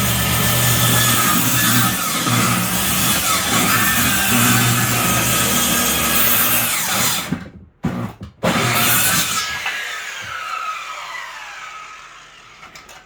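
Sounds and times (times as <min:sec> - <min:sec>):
circular saw cutting wood: 0:00.0 - 0:07.3, 0:08.5 - 0:12.9.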